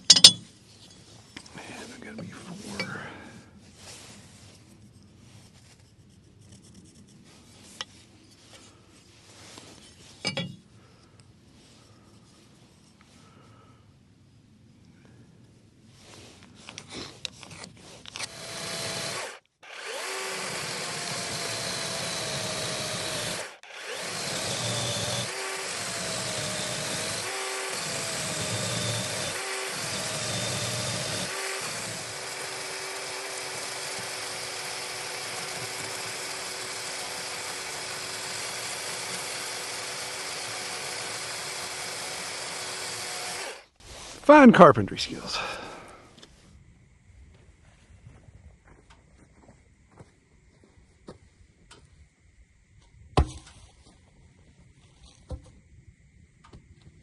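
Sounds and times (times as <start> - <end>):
power tool cutting wood: 18.2 - 43.7.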